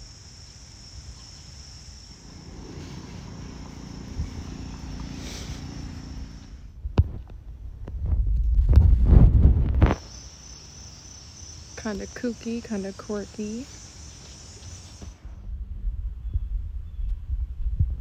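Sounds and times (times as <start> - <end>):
insects chirring: 0.0 - 6.7, 9.8 - 15.3
low rumble: 2.0 - 9.9, 15.2 - 18.0.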